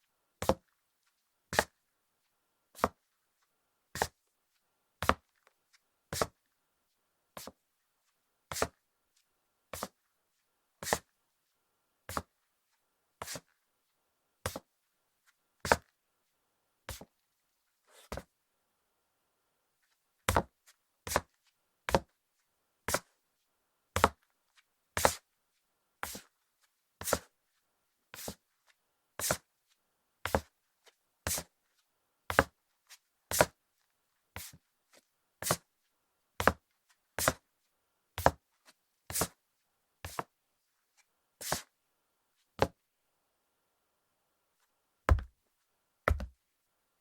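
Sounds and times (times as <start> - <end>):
sandal footsteps on hardwood floor: 45.1 - 45.3, 46.1 - 46.4.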